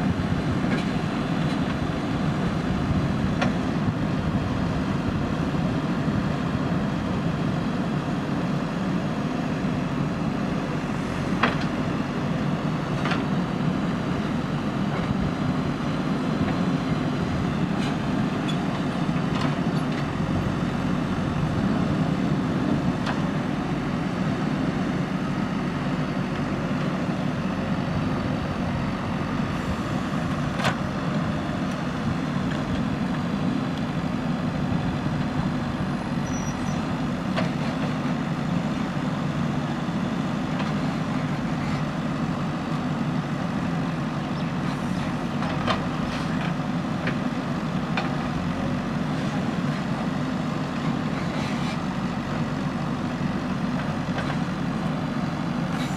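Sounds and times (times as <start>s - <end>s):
diesel engine running under load: 0.0s - 55.9s.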